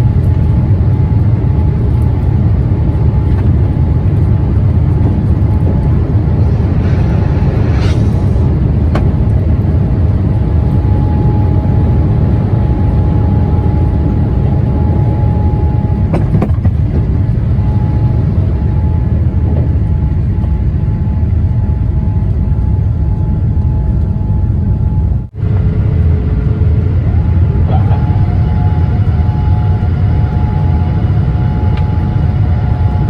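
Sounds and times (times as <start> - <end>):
jet engine low rumble: 0.0 - 33.0
thin steady whine: 4.3 - 16.0
brief hiss: 6.4 - 8.6.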